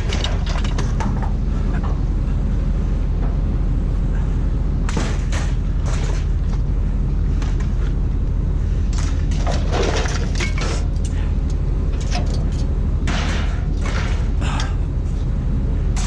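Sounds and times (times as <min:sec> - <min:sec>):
knocks and rattles: 0:00.0 - 0:02.1, 0:08.9 - 0:11.2
low engine drone: 0:00.0 - 0:16.0.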